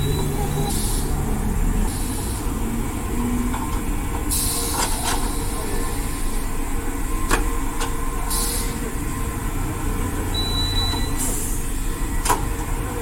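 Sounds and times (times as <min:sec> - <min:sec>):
air hissing: 0:00.6 - 0:02.6, 0:04.3 - 0:06.4, 0:08.2 - 0:08.9.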